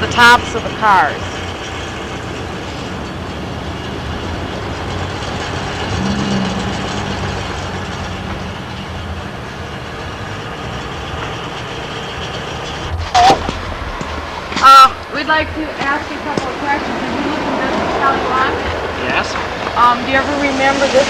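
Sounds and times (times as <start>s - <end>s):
street noise: 0.0s - 21.0s
vehicle engine running: 0.0s - 21.0s.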